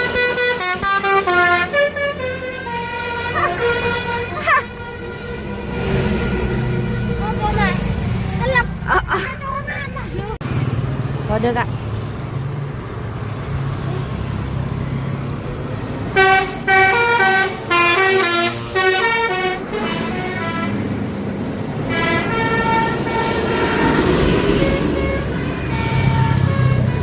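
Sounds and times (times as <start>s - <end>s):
musical air horn melody: 0.0s - 7.4s, 16.2s - 20.8s, 21.9s - 27.0s
bus engine running: 0.0s - 27.0s.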